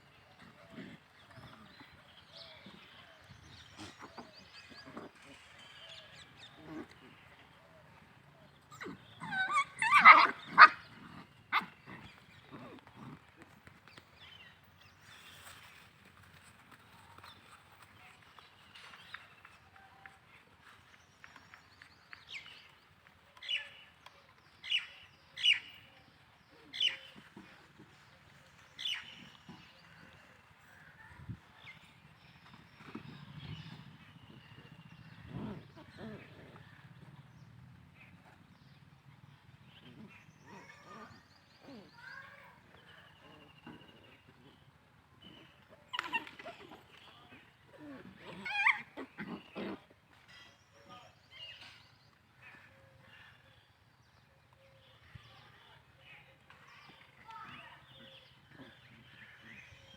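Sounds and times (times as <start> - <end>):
puppies whining and yelping: 8.6 - 13.1, 33.7 - 36.6, 45.6 - 49.8.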